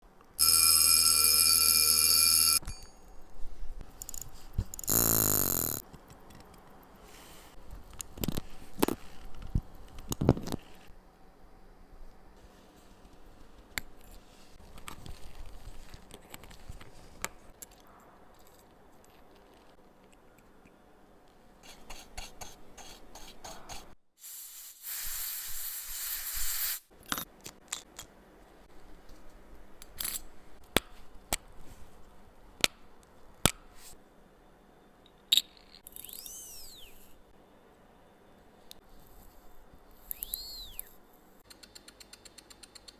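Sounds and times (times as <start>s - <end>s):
hiss: 24.2s - 26.9s
metal tools clicking and scraping: 29.8s - 30.3s.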